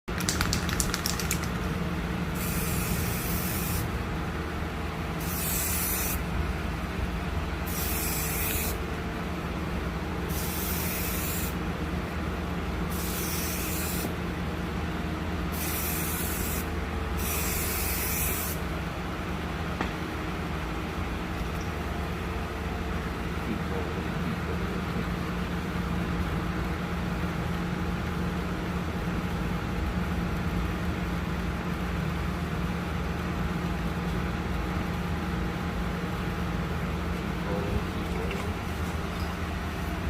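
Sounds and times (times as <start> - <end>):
steady low hum: 0.1 - 40.0
spray hissing: 2.4 - 3.9, 5.2 - 6.2.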